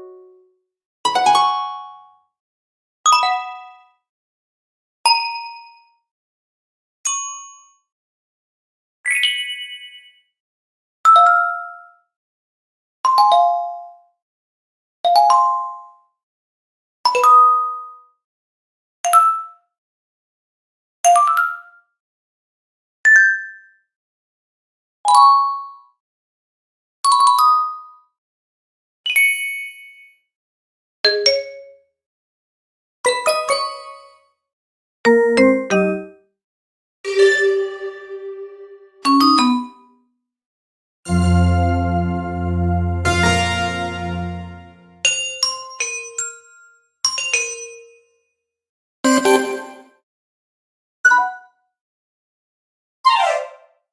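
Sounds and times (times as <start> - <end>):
notification chimes: 41.1 - 45.0.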